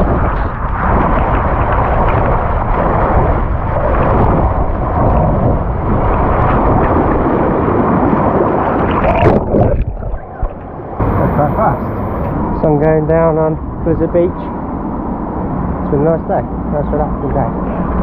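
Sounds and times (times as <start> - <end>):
water rushing on slide: 0.0 - 12.4.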